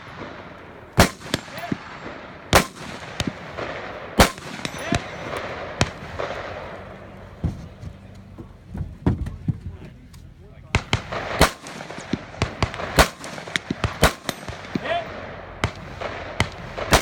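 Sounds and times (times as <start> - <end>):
rifle shots echoing: 0.0 - 7.5, 10.6 - 17.0.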